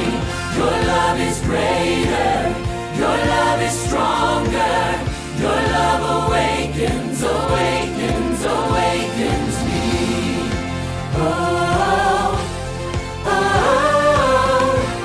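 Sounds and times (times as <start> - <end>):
steady drum beat: 0.0 - 15.0
voices singing in harmony: 0.0 - 15.0.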